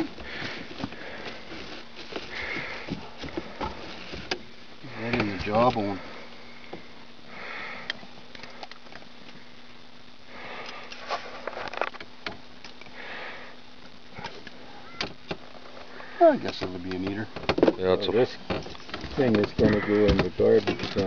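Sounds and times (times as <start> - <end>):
steady low hum: 0.0 - 21.0
breathy hisses: 0.1 - 4.1, 4.8 - 8.6, 10.2 - 11.5, 12.8 - 14.8.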